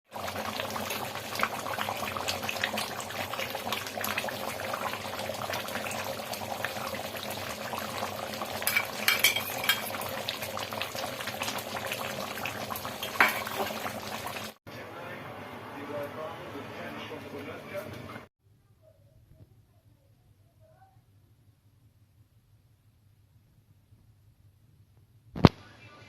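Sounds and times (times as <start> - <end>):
food sizzling in a pan: 0.1 - 14.6.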